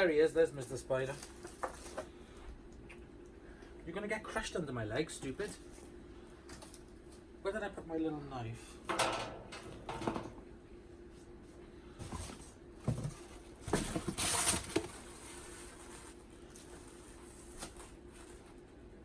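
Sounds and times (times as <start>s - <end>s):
faint steady hum: 0.0s - 19.0s
objects and packaging rustling: 0.6s - 2.2s, 12.0s - 18.8s.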